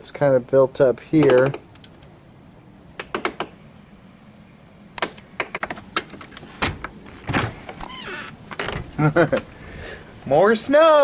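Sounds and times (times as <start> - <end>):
door squeak: 6.6 - 8.9
heavy door thumps: 6.6 - 9.0.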